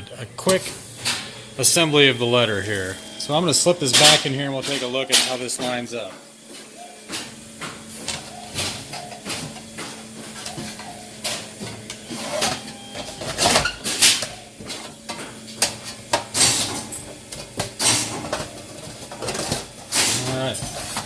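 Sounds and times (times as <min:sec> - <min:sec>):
sheet metal panels clattering: 0:03.9 - 0:05.8.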